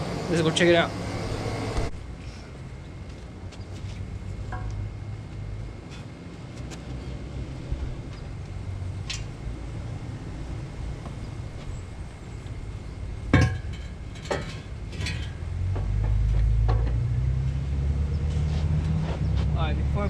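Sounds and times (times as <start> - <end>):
metal clinks and knocks: 13.3 - 17.0.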